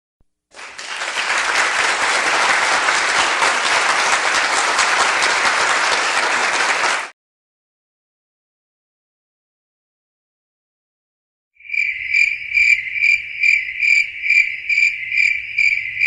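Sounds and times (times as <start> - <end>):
crowd clapping: 0.5 - 7.2.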